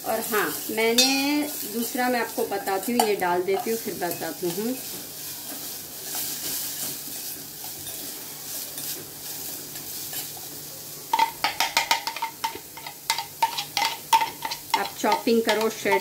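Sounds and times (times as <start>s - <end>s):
garlic sizzling in a pan: 0.0s - 16.0s
spoon scraping metal pan: 11.2s - 16.0s.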